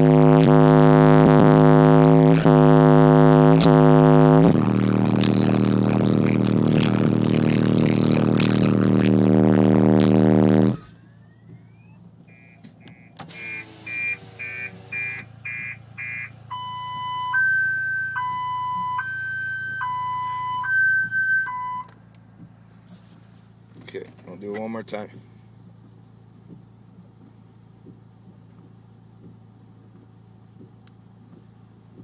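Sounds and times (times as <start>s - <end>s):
bass-heavy rap from subwoofers: 0.0s - 21.9s
two-tone car alarm siren: 0.0s - 22.0s
car alarm chirps: 9.0s - 22.1s.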